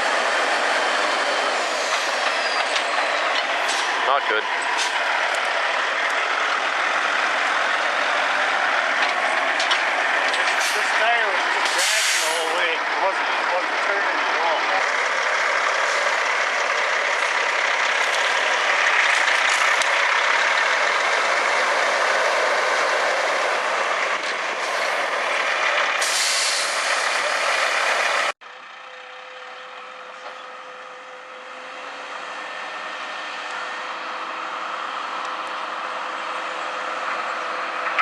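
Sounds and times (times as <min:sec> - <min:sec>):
truck engine running: 0:00.0 - 0:38.0
sharp air hiss: 0:11.7 - 0:12.5, 0:26.0 - 0:26.9.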